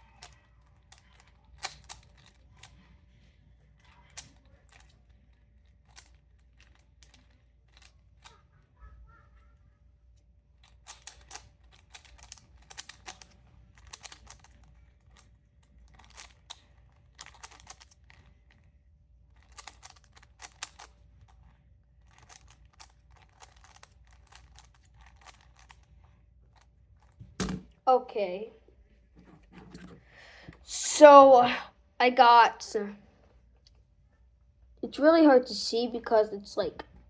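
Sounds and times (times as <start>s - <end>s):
puzzle cube plastic clicks: 0.0s - 2.8s, 3.7s - 8.4s, 10.5s - 27.8s.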